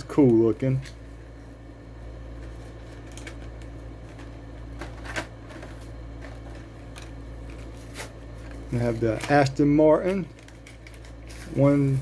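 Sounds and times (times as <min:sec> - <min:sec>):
steady low hum: 0:00.0 - 0:12.0
plastic packaging clicks and crackles: 0:02.8 - 0:12.0.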